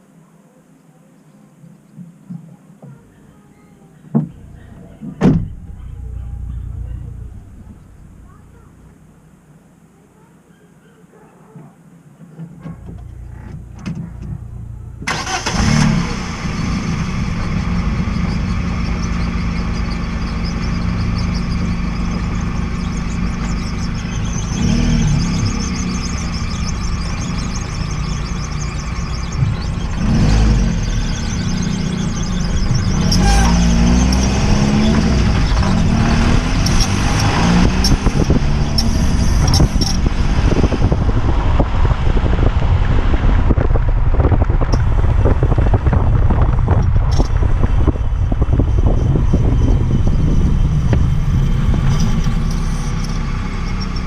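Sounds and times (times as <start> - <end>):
car engine starting and running: 4.1 - 9.6, 12.6 - 54.0
strange noise from engine bay: 12.2 - 42.4, 44.3 - 54.0.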